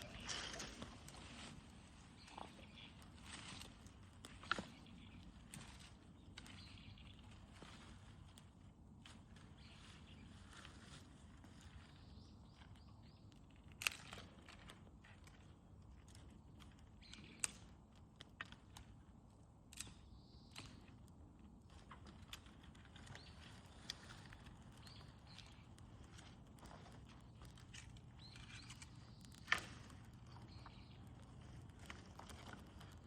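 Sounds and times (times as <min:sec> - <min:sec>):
bonfire pops and crackles: 0:00.0 - 0:08.5, 0:21.8 - 0:33.0
fire low rumble: 0:00.0 - 0:12.2, 0:20.9 - 0:33.0.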